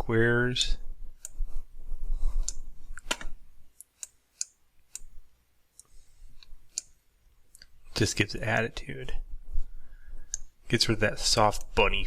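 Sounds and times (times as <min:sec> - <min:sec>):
computer mouse clicking: 0:02.4 - 0:05.1, 0:05.7 - 0:07.7.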